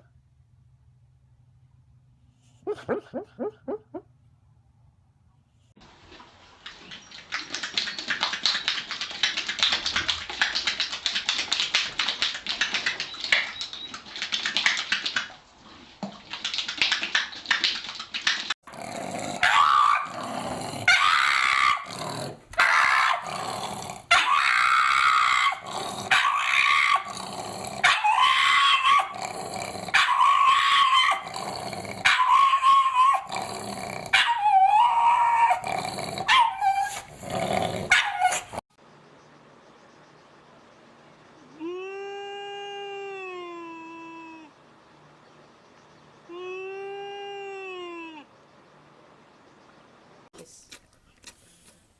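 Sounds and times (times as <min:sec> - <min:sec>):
dog growling: 0:18.7 - 0:24.3, 0:25.5 - 0:38.6
dogs drawn-out calls: 0:19.4 - 0:20.2, 0:20.8 - 0:22.0, 0:24.0 - 0:27.2, 0:27.8 - 0:29.2, 0:29.9 - 0:31.3, 0:32.0 - 0:33.3.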